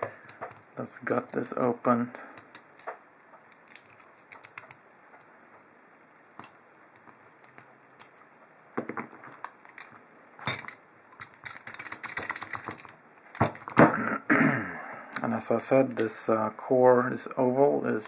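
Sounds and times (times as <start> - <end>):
padlock metal clicks: 2.4 - 4.8.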